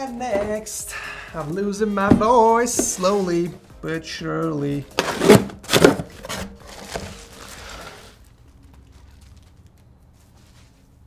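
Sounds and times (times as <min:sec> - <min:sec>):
sharp knocks on boxes: 0:02.0 - 0:03.0
packaging rustle: 0:05.0 - 0:11.0.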